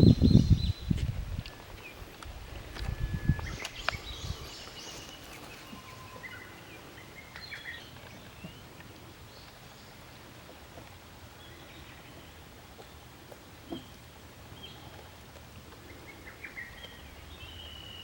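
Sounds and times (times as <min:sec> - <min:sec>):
faint bird chirps: 0:02.8 - 0:08.6.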